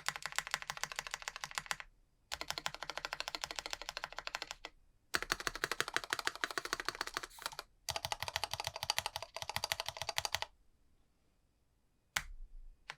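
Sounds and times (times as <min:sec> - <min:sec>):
fast keyboard typing: 0:00.0 - 0:10.5.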